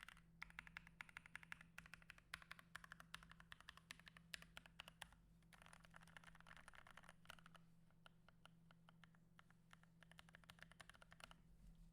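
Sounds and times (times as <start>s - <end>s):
mechanical keyboard typing: 0.0s - 7.6s, 9.7s - 11.4s.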